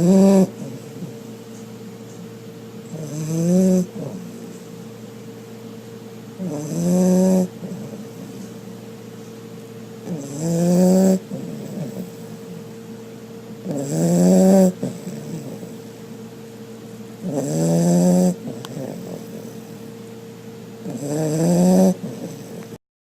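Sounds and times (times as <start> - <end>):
dog snoring loudly: 0.0 - 1.3, 2.9 - 4.5, 6.4 - 8.7, 10.0 - 12.7, 13.6 - 16.0, 17.2 - 19.9, 20.8 - 22.8.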